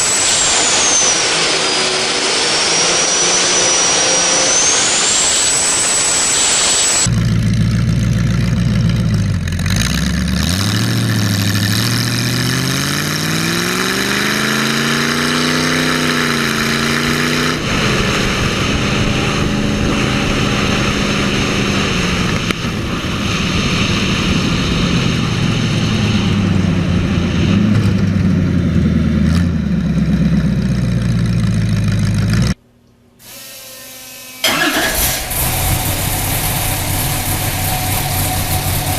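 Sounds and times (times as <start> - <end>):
engine revving and idling: 0.0 - 32.6, 34.4 - 38.9.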